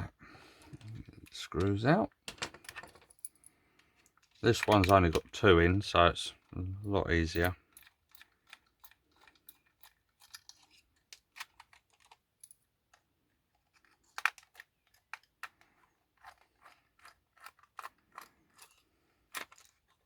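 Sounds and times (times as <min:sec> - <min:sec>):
small plastic clicks and scrapes: 0:03.7 - 0:05.4, 0:07.4 - 0:12.3, 0:12.9 - 0:20.0.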